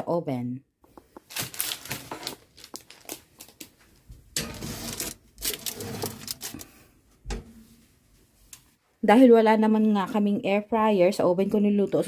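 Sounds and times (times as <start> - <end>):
metal baking sheet clattering: 4.4 - 6.6.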